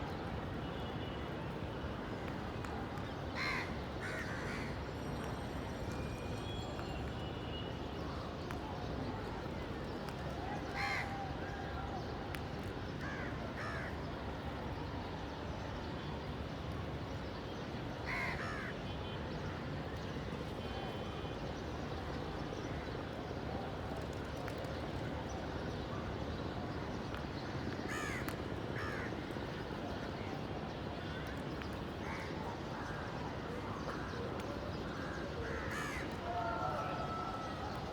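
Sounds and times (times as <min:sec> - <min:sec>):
crows cawing: 0:03.4 - 0:04.7, 0:18.1 - 0:18.7, 0:27.9 - 0:29.1, 0:35.4 - 0:36.1.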